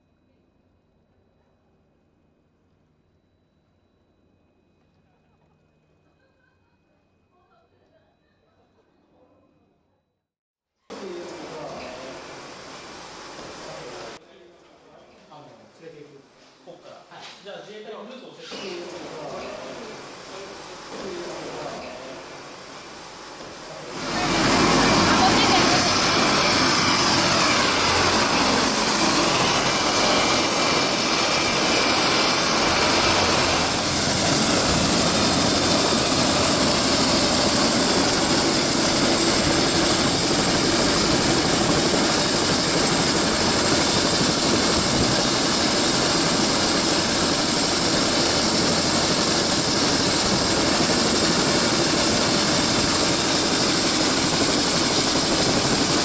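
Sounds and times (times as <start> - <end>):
helicopter engine and rotor: 18.9 - 56.0
high whine: 20.2 - 56.0.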